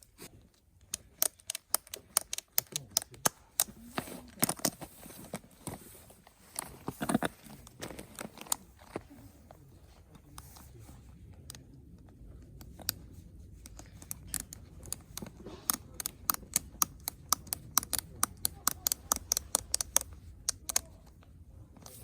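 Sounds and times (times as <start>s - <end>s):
sharp clicks: 0.0s - 5.8s, 13.7s - 21.2s.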